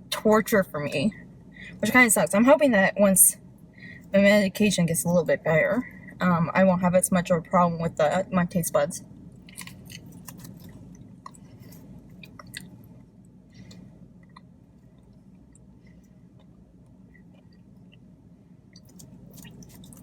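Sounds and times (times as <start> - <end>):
close-up chewing with mouth clicks: 9.4 - 15.7, 18.7 - 20.0.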